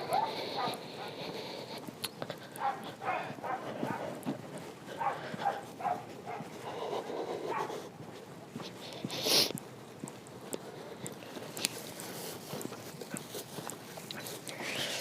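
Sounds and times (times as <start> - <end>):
dogs barking: 0.0 - 4.2, 4.8 - 7.9.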